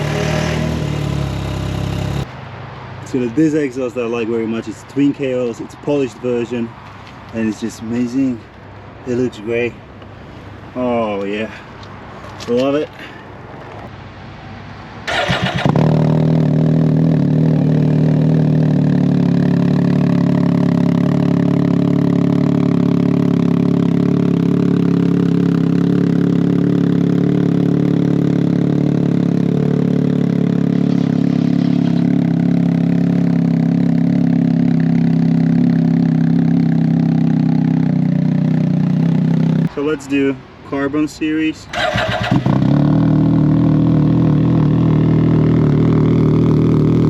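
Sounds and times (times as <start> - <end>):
engine starter cranking: 15.1 - 15.9, 41.7 - 42.6
engine idling: 41.7 - 42.6.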